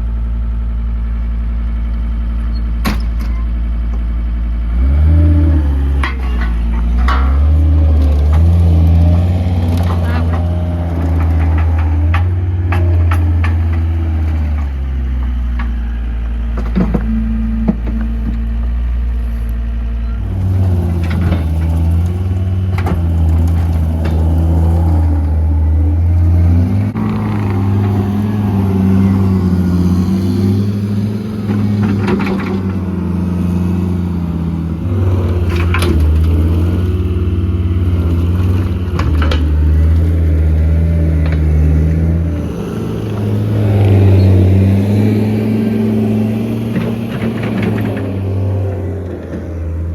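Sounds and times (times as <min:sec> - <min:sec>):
skid steer engine running: 0:00.0 - 0:49.9
knocks and clanks: 0:05.7 - 0:18.7, 0:20.2 - 0:25.4, 0:26.0 - 0:33.1, 0:33.8 - 0:49.9.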